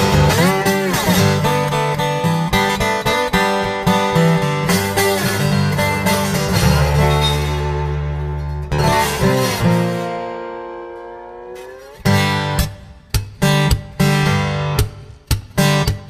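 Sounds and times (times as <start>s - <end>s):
guitar plucked and strummed: 0.0s - 16.0s
steady bass line: 5.5s - 14.9s.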